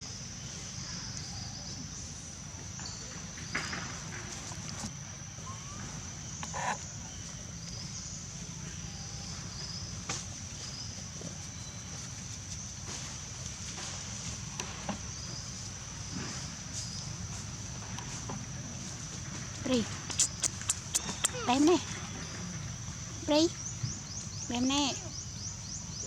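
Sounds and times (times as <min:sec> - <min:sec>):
faint chirping calls: 0:15.0 - 0:26.0.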